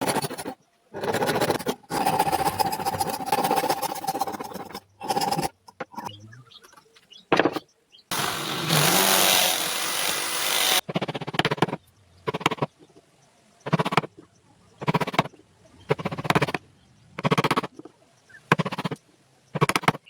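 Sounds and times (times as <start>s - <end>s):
power tools cutting wood: 8.1s - 10.8s.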